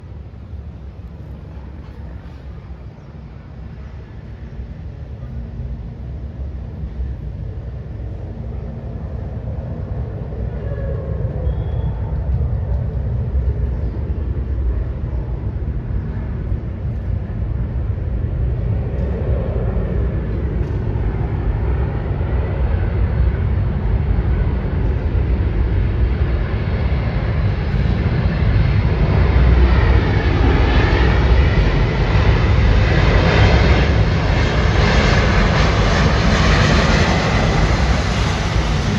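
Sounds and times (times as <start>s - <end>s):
airplane engines rumbling: 0.0s - 38.9s.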